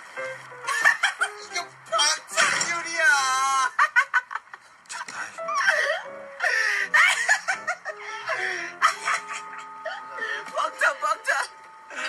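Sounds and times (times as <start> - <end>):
music: 0.0 - 3.6, 4.9 - 12.0
people laughing and exclaiming: 6.9 - 9.7.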